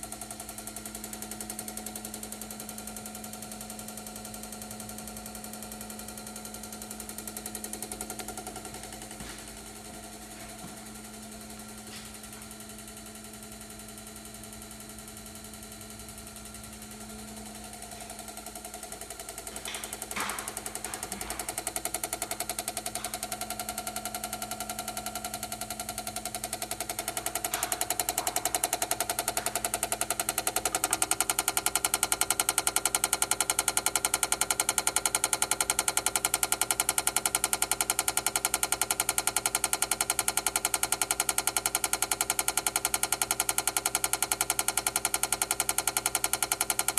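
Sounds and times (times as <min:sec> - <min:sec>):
garage door opener clicking rapidly: 0:00.0 - 0:46.9.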